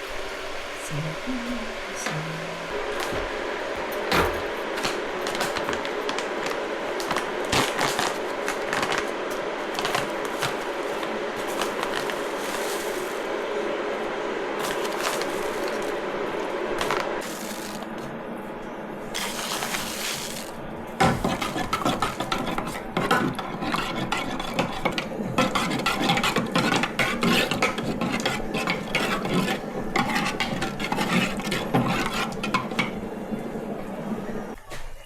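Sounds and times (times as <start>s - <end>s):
dishes and utensils clattering: 19.2s - 33.0s.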